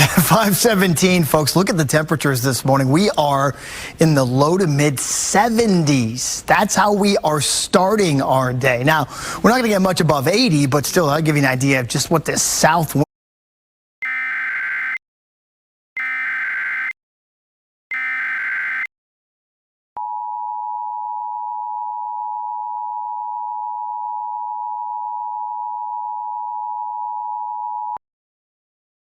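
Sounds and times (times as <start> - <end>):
bursts of data tones: 14.0 - 15.0, 16.0 - 17.0, 17.9 - 18.9
two-tone attention signal: 14.0 - 15.0, 17.9 - 18.9.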